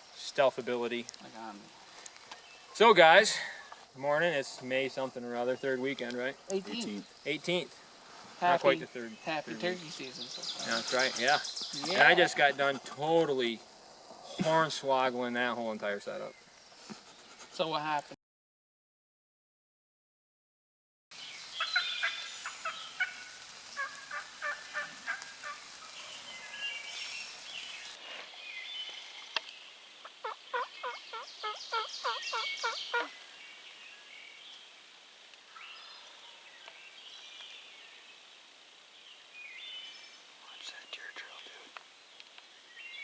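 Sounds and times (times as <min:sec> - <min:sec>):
turkey gobbling: 0:21.7 - 0:25.7, 0:30.0 - 0:33.2
turkey yelping: 0:23.8 - 0:25.6, 0:30.0 - 0:33.2.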